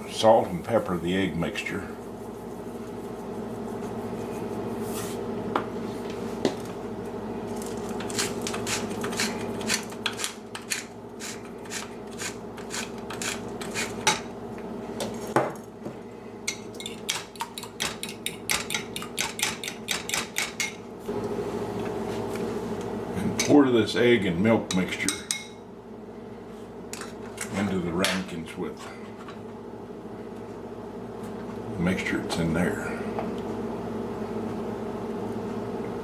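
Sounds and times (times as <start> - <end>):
utensil clicking against bowl: 16.7 - 20.8.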